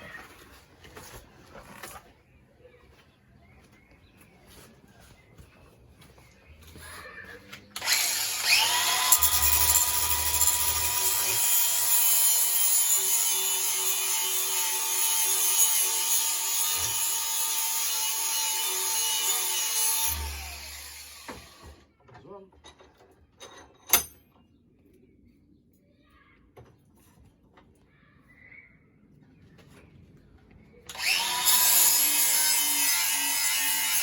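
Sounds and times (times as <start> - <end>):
angle grinder grinding metal: 7.8 - 21.7, 30.9 - 34.0.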